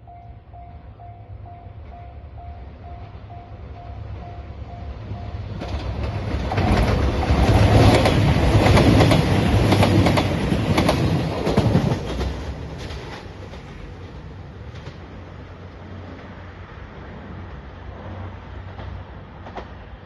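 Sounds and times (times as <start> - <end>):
diesel train passing at speed: 0.0 - 20.0
wheels clicking over rail joints: 5.5 - 15.2.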